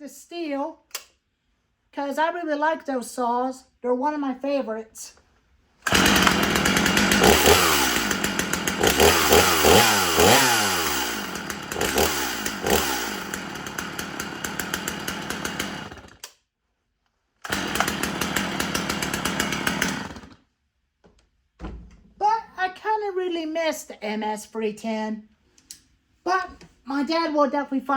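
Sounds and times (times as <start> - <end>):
chainsaw revving: 5.8 - 16.2, 17.4 - 20.4.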